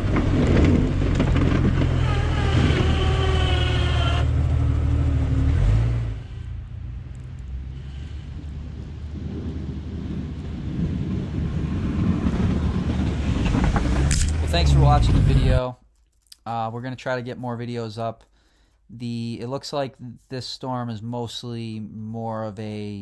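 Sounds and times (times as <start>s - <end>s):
engine revving under load: 0.0s - 15.6s.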